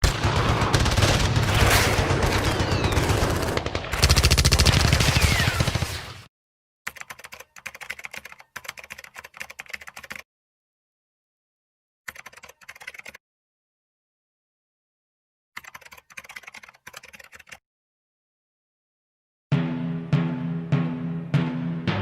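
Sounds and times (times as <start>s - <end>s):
airsoft guns firing on full auto: 0.0s - 6.3s.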